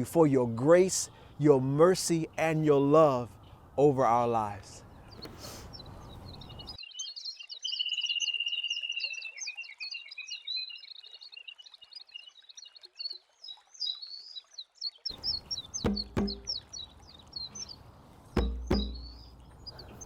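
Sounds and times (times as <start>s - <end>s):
birds chirping: 0.7s - 20.0s
bird trill: 5.1s - 12.4s, 15.1s - 17.8s, 18.4s - 20.0s
sharp knocks: 15.1s - 16.6s, 18.4s - 19.3s.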